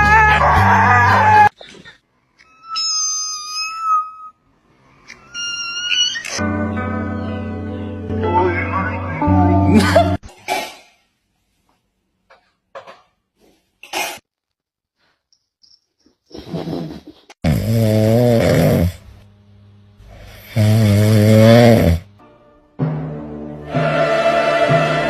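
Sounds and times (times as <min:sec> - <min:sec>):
loud rasping snores: 0:17.4 - 0:19.0, 0:20.2 - 0:22.1.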